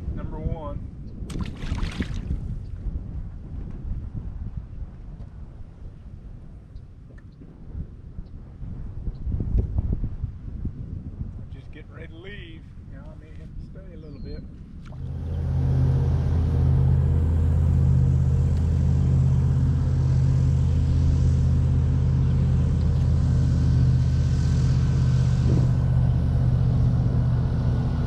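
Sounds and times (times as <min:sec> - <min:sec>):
boat engine droning: 0:14.9 - 0:28.0.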